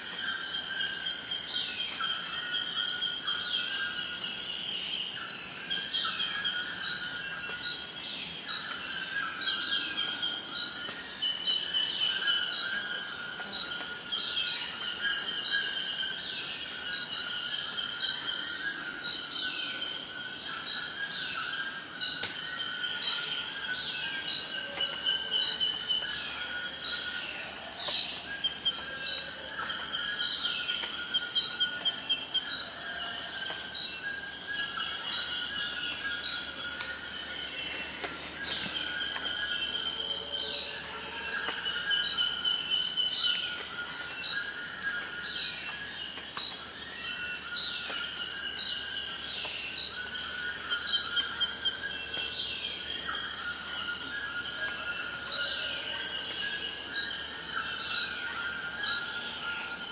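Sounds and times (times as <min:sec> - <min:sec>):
high-pitched insect drone: 0:48.5 - 0:59.9.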